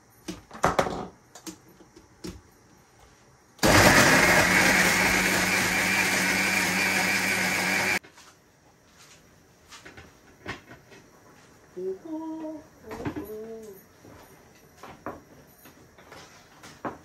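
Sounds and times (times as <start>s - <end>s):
mixer grinder running: 3.6s - 8.0s.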